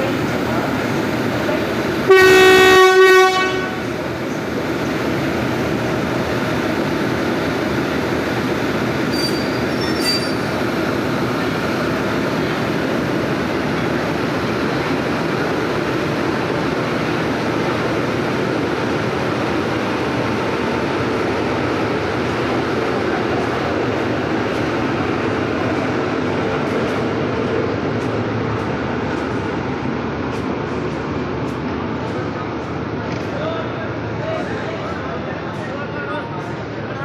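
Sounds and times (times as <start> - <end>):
train coaches rolling over track: 0.0 - 37.0
locomotive horn: 2.1 - 3.9
faint high squeals: 9.1 - 10.5.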